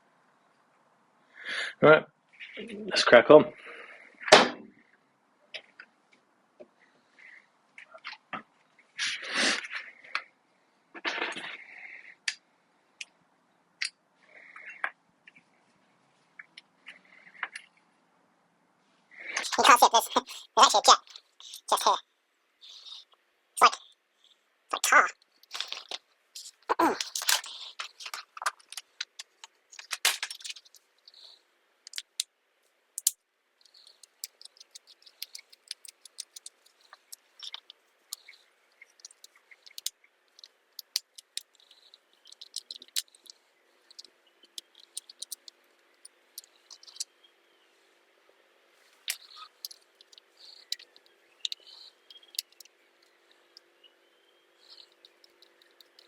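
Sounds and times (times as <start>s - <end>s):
metal parts and tools clinking: 25.4s - 30.8s, 33.0s - 47.1s.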